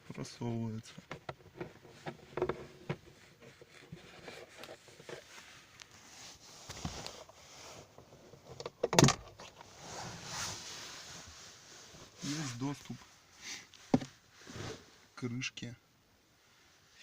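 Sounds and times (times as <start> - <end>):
plastic clatter: 1.0 - 5.3, 8.3 - 9.6.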